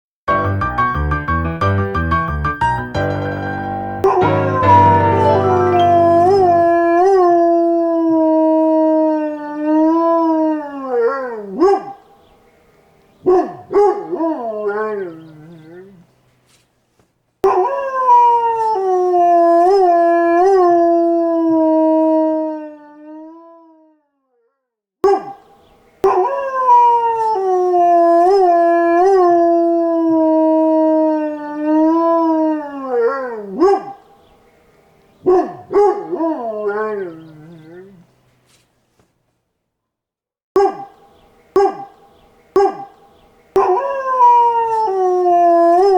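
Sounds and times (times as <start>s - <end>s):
dog howling: 4.0s - 12.0s, 13.3s - 15.9s, 17.4s - 23.0s, 26.0s - 34.0s, 35.2s - 38.0s, 40.6s - 40.9s, 41.6s - 41.9s, 42.6s - 42.9s, 43.6s - 45.9s.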